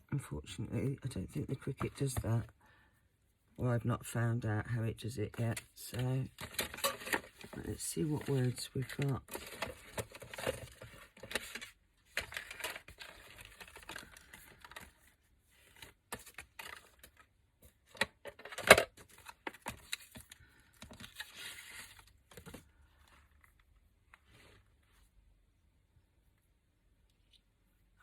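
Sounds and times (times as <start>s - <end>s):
paper rustling: 5.5s - 25.2s.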